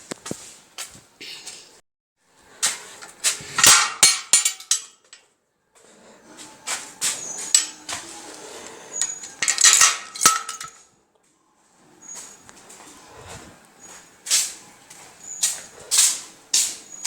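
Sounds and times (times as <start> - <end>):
metallic clinks: 7.2 - 7.9, 9.0 - 10.8.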